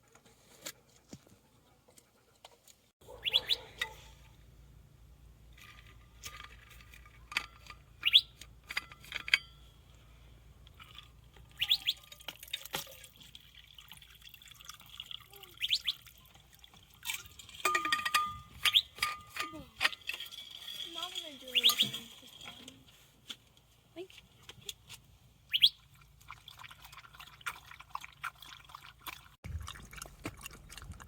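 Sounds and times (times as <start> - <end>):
birds chirping: 3.1 - 3.8, 11.6 - 12.0, 15.6 - 16.1, 21.5 - 22.0.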